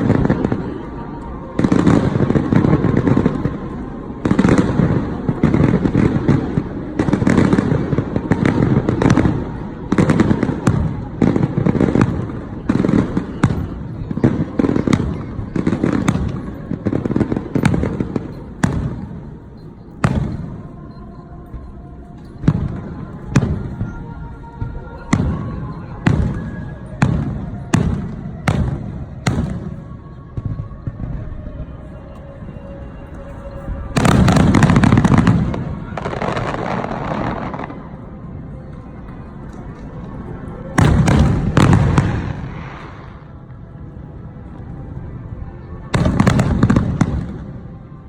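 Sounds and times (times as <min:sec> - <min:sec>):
fireworks booming: 0:00.0 - 0:20.7, 0:24.6 - 0:31.4, 0:33.6 - 0:38.0, 0:40.7 - 0:43.4
fireworks crackling: 0:00.0 - 0:48.0.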